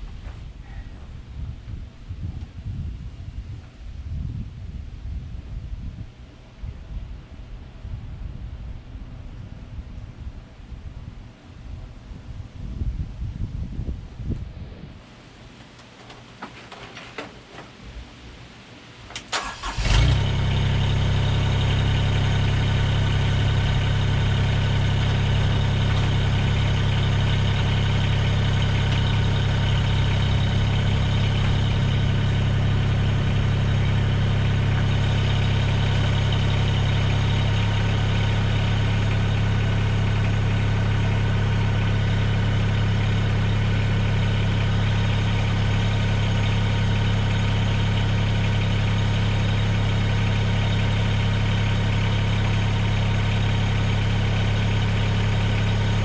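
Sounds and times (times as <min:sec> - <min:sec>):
tractor engine idling: 0:18.9 - 0:56.0
diesel engine starting: 0:19.0 - 0:56.0.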